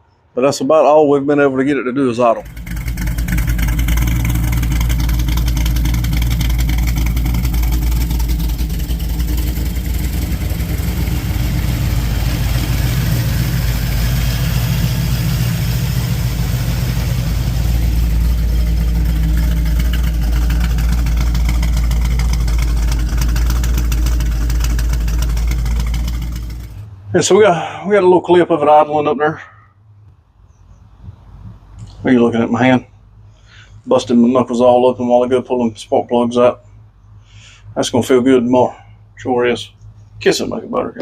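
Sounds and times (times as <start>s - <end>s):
car engine idling: 2.3s - 27.4s.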